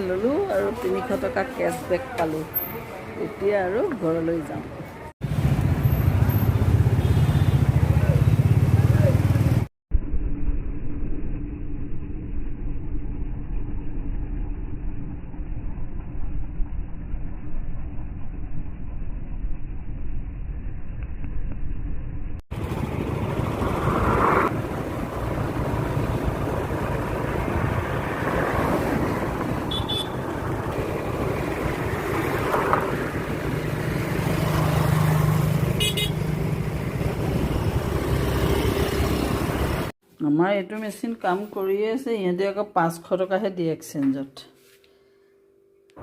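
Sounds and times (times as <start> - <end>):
vehicle engines running: 0.0 - 9.7, 22.5 - 40.0
car horns honking: 6.9 - 7.7, 29.6 - 30.4, 35.8 - 36.3.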